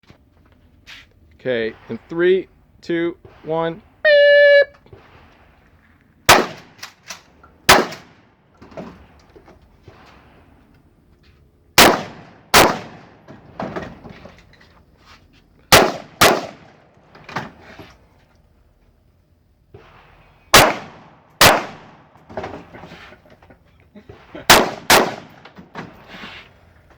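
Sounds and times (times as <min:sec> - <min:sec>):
short beep: 0:04.0 - 0:04.8
loud gunshots: 0:06.3 - 0:06.8, 0:07.7 - 0:08.2, 0:11.8 - 0:13.2, 0:15.7 - 0:16.8, 0:20.5 - 0:22.0, 0:24.2 - 0:25.4.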